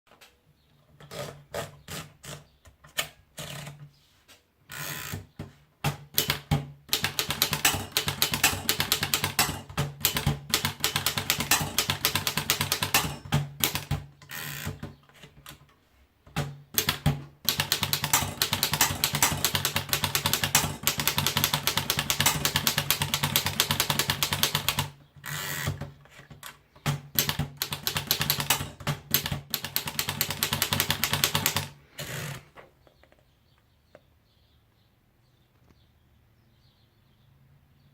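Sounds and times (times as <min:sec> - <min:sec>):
manual typewriter typing: 0:04.7 - 0:15.7, 0:16.3 - 0:32.6.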